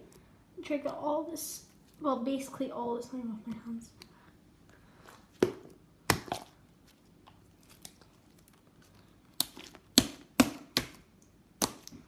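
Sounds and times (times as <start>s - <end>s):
sticky slime snapping: 6.0s - 6.5s, 9.3s - 12.0s.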